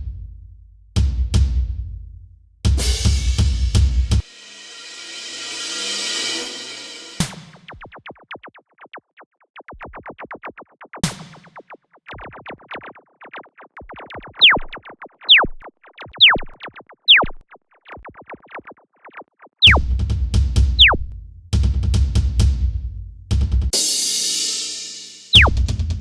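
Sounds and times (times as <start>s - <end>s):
fast electronic clicks: 7.7s - 19.8s, 20.8s - 21.0s
tones falling in pitch: 14.2s - 17.4s, 19.6s - 19.8s, 20.8s - 21.0s, 25.4s - 25.6s.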